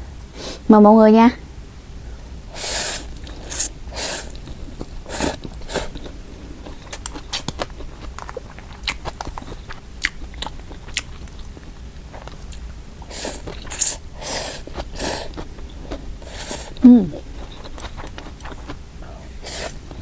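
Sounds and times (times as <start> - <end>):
chewing noodles: 2.5 - 20.0.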